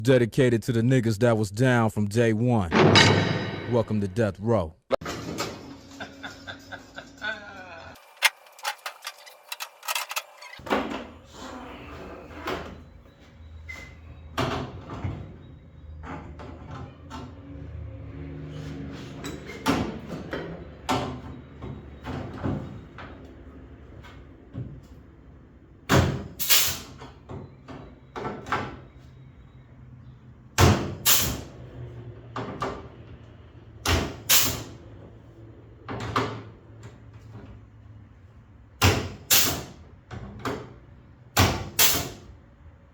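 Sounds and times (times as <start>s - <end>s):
knocks and clanks on car body: 25.8s - 26.4s, 30.6s - 31.4s, 32.3s - 33.0s, 33.8s - 34.7s, 38.8s - 42.3s.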